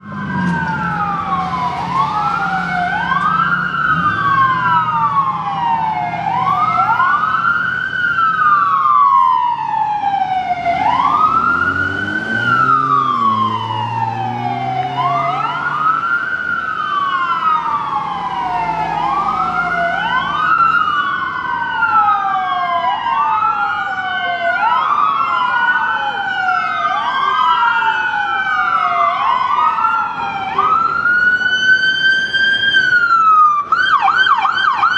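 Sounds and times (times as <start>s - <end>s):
electronic sirens wailing: 0.0s - 34.9s.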